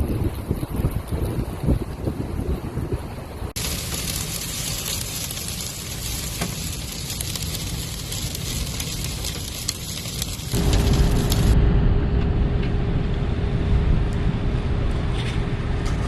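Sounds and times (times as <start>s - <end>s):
low rumble: 3.5s - 16.0s
wind-driven sand hissing: 3.6s - 11.6s
vehicle engine running: 10.2s - 16.0s.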